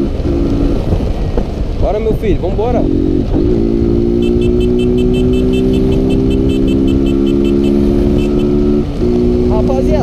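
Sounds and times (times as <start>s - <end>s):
wind rumble: 0.0s - 10.0s
motorcycle engine at high revs: 2.6s - 10.0s.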